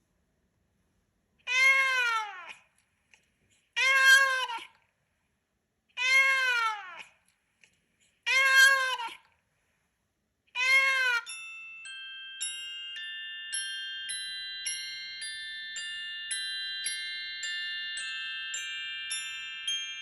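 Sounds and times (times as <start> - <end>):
cat meow ringtone: 1.5 - 2.5, 3.8 - 4.6, 6.0 - 7.0, 8.3 - 9.1, 10.6 - 11.4.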